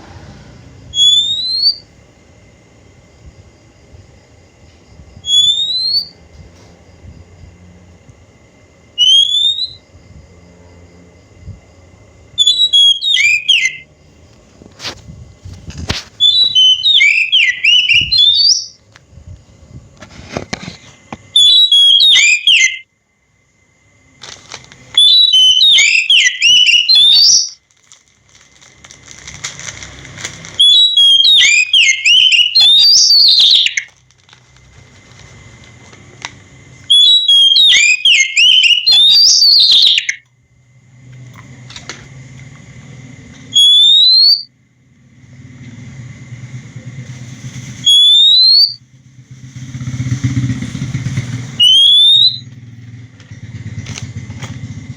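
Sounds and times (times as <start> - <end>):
bird singing whistled phrases: 0.9 - 1.8, 5.2 - 6.1, 9.0 - 9.8, 12.4 - 13.8, 16.2 - 18.8, 21.4 - 22.8, 25.0 - 27.6, 30.6 - 33.9, 36.9 - 40.2, 43.6 - 44.5, 47.9 - 48.8, 51.6 - 52.4.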